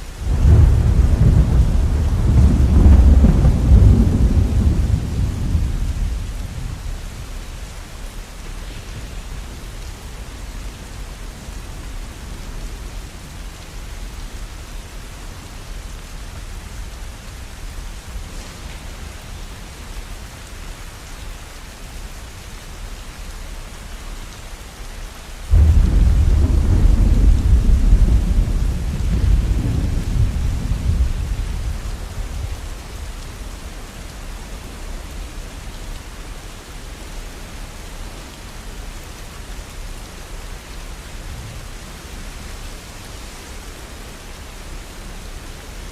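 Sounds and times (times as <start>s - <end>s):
steady rainfall: 0.0s - 45.9s
thunder clap rumbling: 0.2s - 6.8s, 25.5s - 32.8s.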